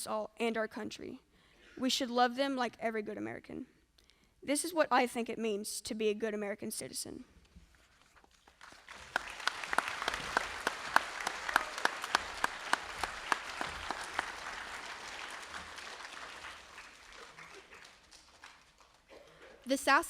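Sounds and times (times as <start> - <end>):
audience applauding: 8.4 - 19.6
loud single claps: 8.9 - 18.9.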